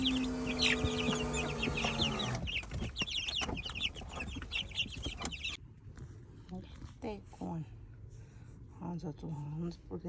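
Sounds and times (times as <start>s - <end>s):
chickens clucking: 0.0s - 5.6s.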